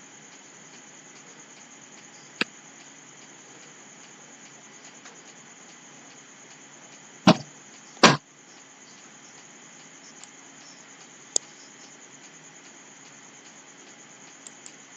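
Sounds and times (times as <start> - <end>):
loud sharp knocks: 7.3 - 8.2.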